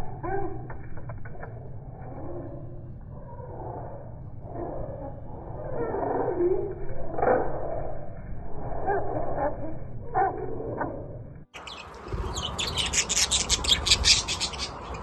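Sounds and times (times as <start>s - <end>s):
slowed budgerigar groans: 2.0s - 10.9s
budgerigar flock chattering: 11.6s - 15.0s.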